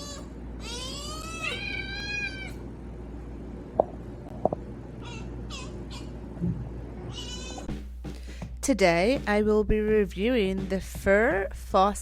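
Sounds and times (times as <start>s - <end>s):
cat meowing: 0.0s - 2.6s, 7.1s - 7.7s.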